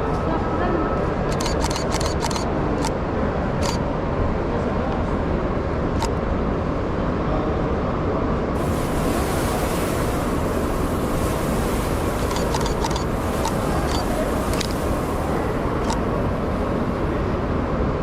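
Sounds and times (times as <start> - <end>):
low rumble of cars: 0.0 - 18.0
sharp clicks: 1.3 - 2.9, 12.3 - 14.8
wind hiss on microphone: 8.6 - 18.0.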